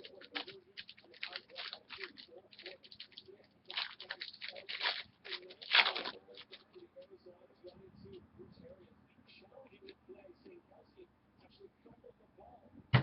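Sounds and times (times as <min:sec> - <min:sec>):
card pack wrapper tearing and crinkling: 0:00.0 - 0:06.6.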